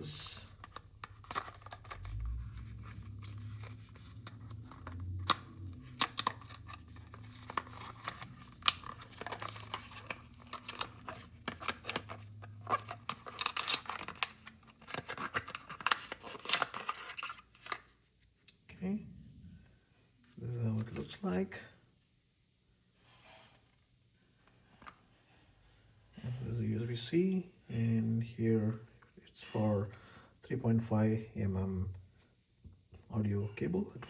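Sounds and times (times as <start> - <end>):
packaging scratching and rustling: 0.1 - 17.9.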